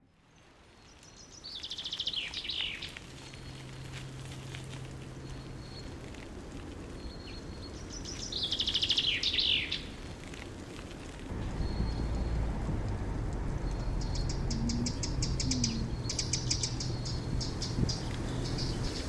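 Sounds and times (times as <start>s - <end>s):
steady outdoor hiss: 0.1s - 19.0s
songbird trilling: 13.6s - 19.0s.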